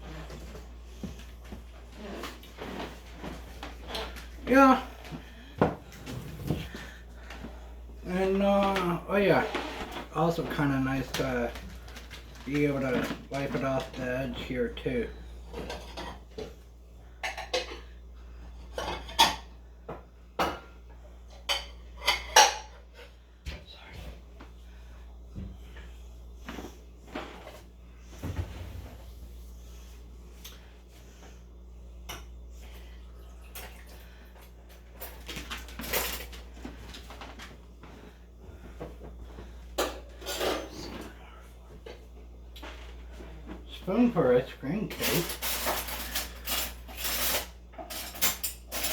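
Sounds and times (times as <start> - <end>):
steady low hum: 0.0 - 48.9
utensils and pot clinking: 44.9 - 48.9.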